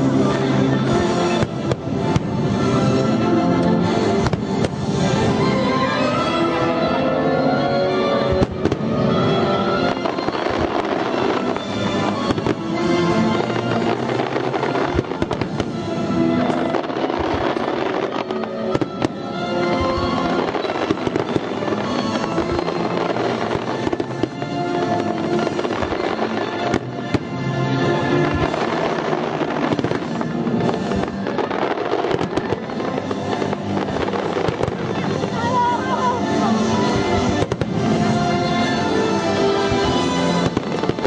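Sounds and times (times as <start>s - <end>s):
fireworks bangs and crackles: 0.0s - 41.0s
loud music: 0.0s - 41.0s.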